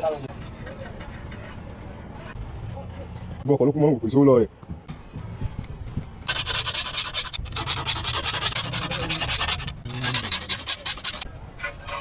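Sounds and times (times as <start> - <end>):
scraping on a hard surface: 6.3 - 12.0.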